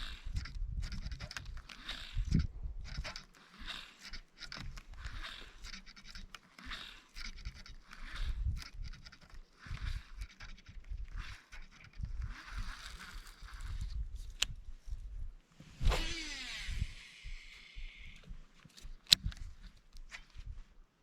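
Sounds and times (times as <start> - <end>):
wind buffeting microphone: 0.0 - 3.2, 9.7 - 18.4
fishing reel whirring: 0.0 - 14.1, 15.7 - 18.4
fishing line hissing off reel: 15.7 - 18.2.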